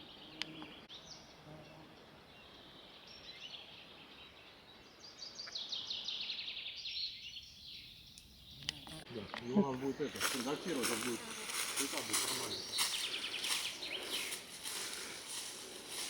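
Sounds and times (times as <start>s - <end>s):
songbird chirps: 0.0s - 16.0s
songbird rapid trill: 6.4s - 16.0s.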